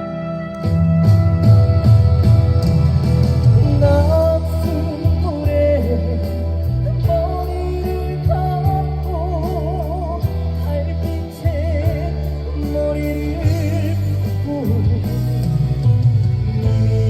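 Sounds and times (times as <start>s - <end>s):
backing track with steady bass: 0.0s - 17.0s
man singing with vibrato: 3.5s - 17.0s.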